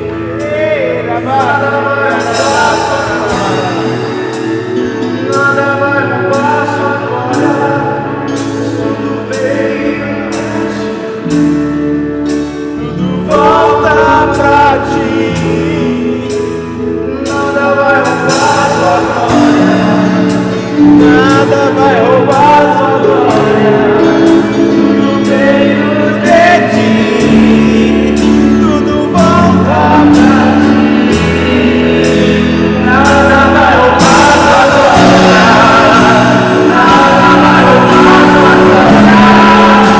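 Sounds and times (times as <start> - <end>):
singers: 0.0 - 11.8, 12.6 - 39.9
gospel band playing: 0.0 - 39.9.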